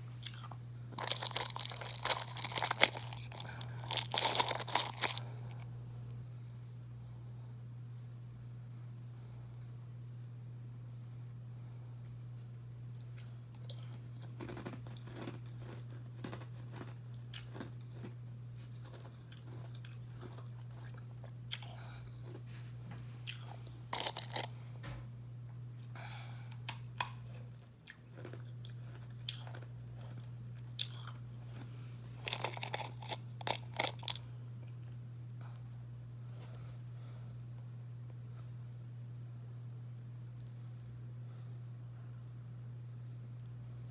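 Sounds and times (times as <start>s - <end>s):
steady low hum: 0.0s - 43.9s
ice crunching while chewed: 0.2s - 6.5s, 12.9s - 24.6s, 25.8s - 35.0s.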